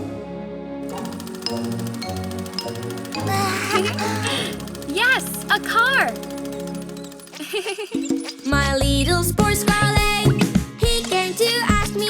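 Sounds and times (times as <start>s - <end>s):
cheerful cartoon music: 6.8s - 12.0s.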